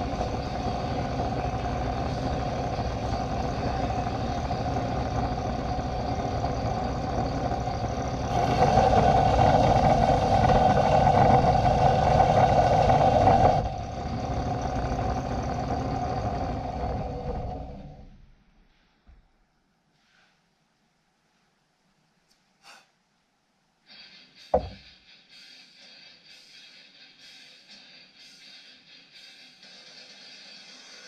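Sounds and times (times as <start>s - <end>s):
hiss: 0.0s - 16.4s, 23.9s - 31.0s
shop machine whirring: 0.0s - 18.4s.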